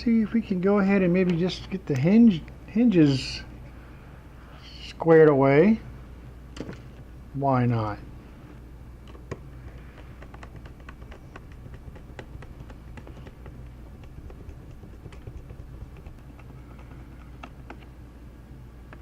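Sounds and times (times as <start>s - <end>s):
low hum: 5.8s - 19.0s.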